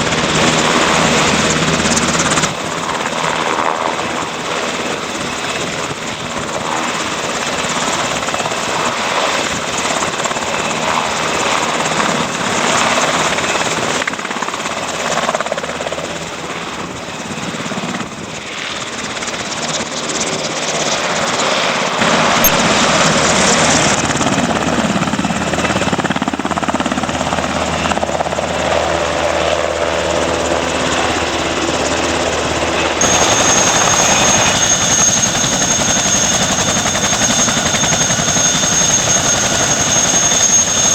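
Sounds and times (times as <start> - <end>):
helicopter rotor and engine: 0.0 - 40.9
steady high whine: 22.0 - 40.9.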